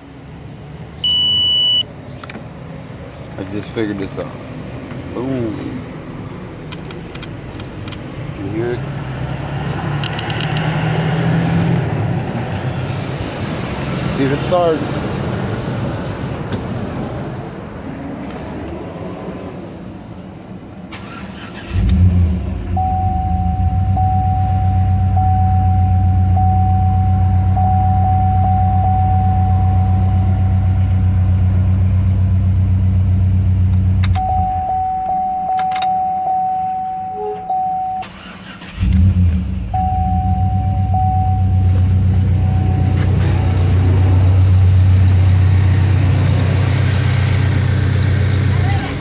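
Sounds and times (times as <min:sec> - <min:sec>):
car engine starting and running: 0:00.8 - 0:02.7, 0:03.4 - 0:18.9, 0:20.8 - 0:49.0
thin steady high tone: 0:22.8 - 0:31.2.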